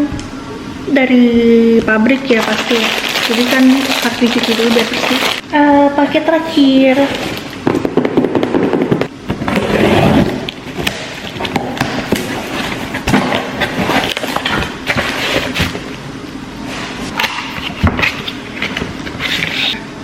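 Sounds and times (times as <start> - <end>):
packaging rustling and crinkling: 2.3 - 5.4.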